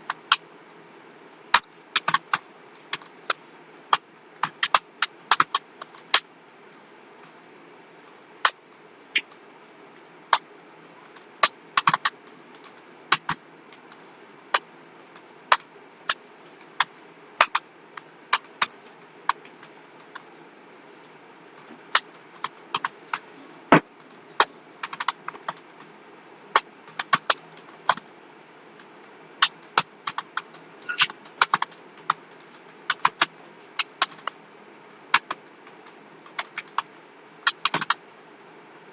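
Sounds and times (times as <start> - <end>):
faint steady hiss: 0.0 - 38.9
keyboard typing: 2.0 - 6.0, 24.8 - 25.6, 29.5 - 31.8.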